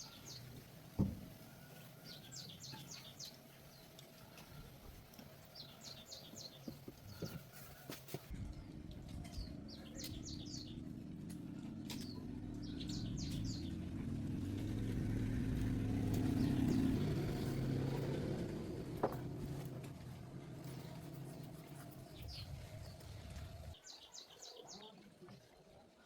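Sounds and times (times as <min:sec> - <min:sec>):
birds chirping: 0:00.0 - 0:07.9, 0:09.0 - 0:19.6, 0:20.5 - 0:25.1
vehicle engine running: 0:08.4 - 0:23.8.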